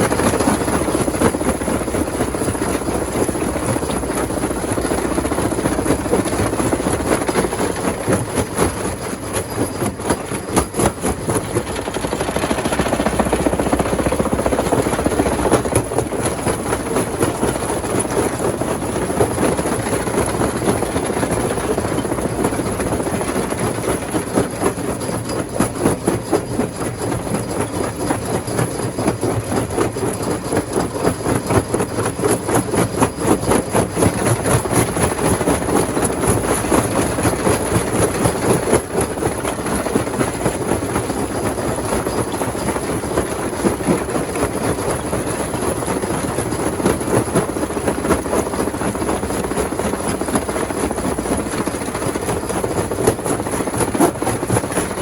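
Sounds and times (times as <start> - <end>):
rock crusher engine drone: 0.0 - 24.3
stone rattling and clattering: 3.3 - 19.0.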